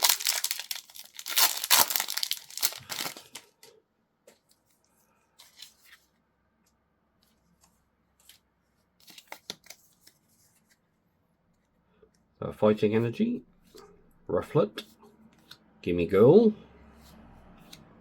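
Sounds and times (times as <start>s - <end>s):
foil pack tearing and crinkling: 0.0s - 3.5s.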